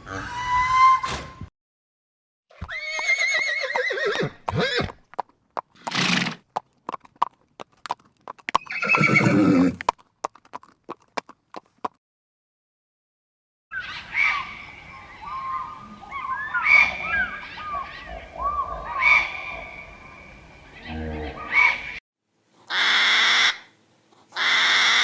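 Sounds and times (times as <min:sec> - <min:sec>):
horse neighing: 0:02.7 - 0:05.0, 0:05.8 - 0:06.4, 0:08.6 - 0:09.8
hooves clopping: 0:04.4 - 0:12.0.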